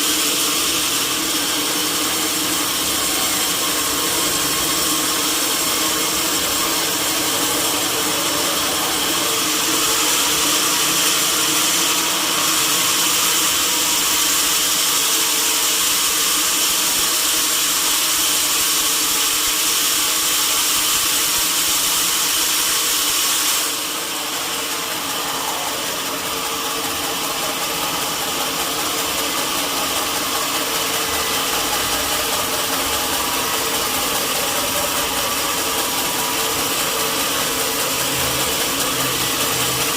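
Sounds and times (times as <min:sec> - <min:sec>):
steady whine: 0:00.0 - 0:14.9, 0:23.6 - 0:39.9
sawmill saw cutting log: 0:00.0 - 0:39.9.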